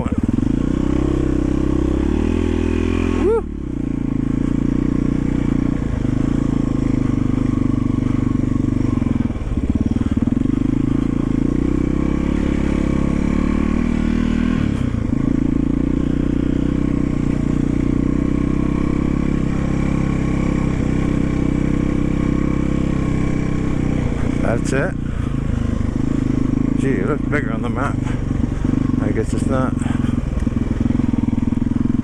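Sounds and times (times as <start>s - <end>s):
motorcycle engine droning: 0.0s - 32.0s.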